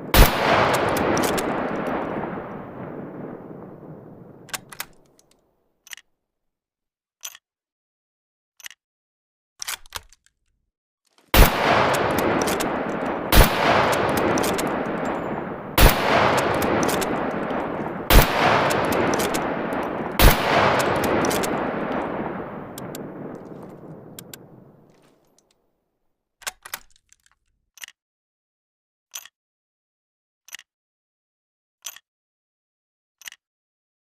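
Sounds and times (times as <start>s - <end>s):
rifle shots with echo: 0.0s - 5.0s, 11.3s - 24.9s
rifle bolt clicks: 0.1s - 5.3s, 9.6s - 10.4s, 11.4s - 25.1s, 26.4s - 28.0s.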